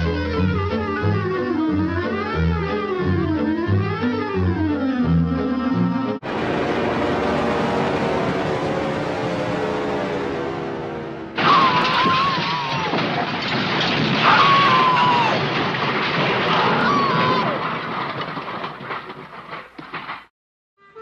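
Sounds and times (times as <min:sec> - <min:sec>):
cartoon rattling clatter: 0:11.4 - 0:20.3.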